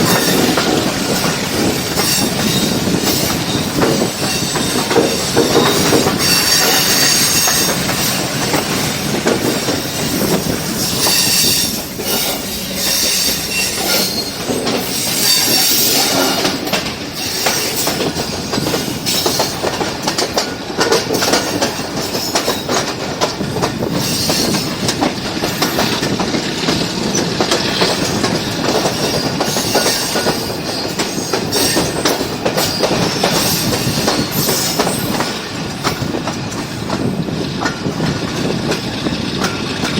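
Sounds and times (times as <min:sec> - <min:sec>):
train wheels clattering over rails: 0:00.0 - 0:39.9
wheel squeal: 0:02.0 - 0:08.2, 0:09.8 - 0:16.4.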